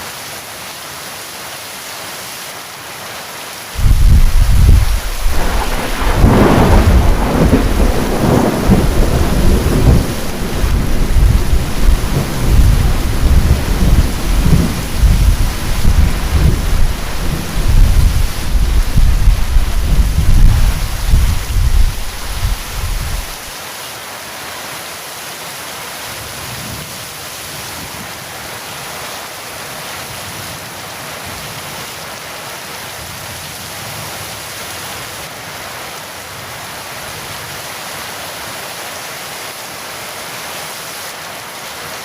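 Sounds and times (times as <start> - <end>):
heavy rain: 0.0 - 42.0
thunder crack: 3.8 - 23.5
thunder rumbling: 3.8 - 23.5.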